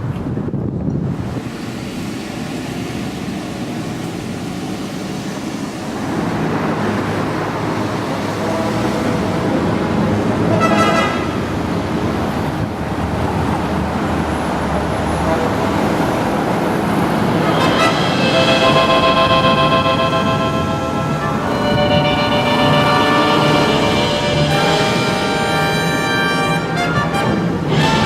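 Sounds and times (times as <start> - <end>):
road traffic passing: 0.0 - 28.0
car horn toot: 10.5 - 11.4, 17.5 - 28.0.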